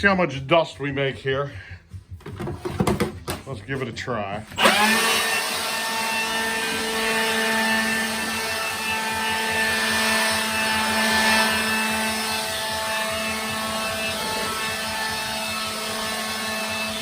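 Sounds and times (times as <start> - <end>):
electric blower running: 4.4 - 17.0.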